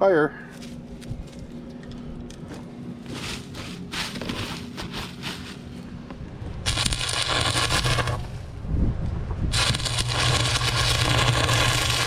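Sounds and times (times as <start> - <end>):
welder hum: 3.0 - 8.6, 9.4 - 12.0
arc welding crackle: 6.6 - 8.5, 9.5 - 12.0.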